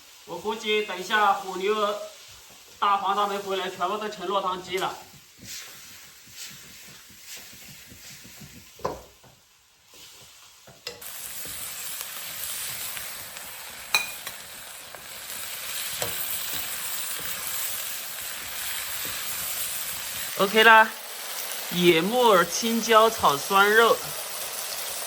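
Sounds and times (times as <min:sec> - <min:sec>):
food sizzling in a wok: 0:00.0 - 0:25.0
metal spatula scraping a wok: 0:15.0 - 0:20.0.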